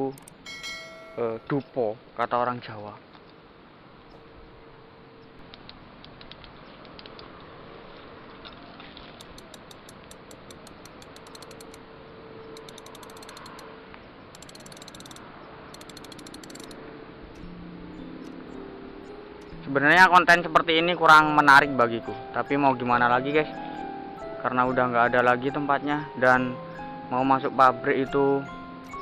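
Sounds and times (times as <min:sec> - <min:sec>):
insects clicking trills: 0:00.0 - 0:00.4, 0:09.2 - 0:17.6, 0:18.2 - 0:19.6
outdoor background noise: 0:00.0 - 0:27.2.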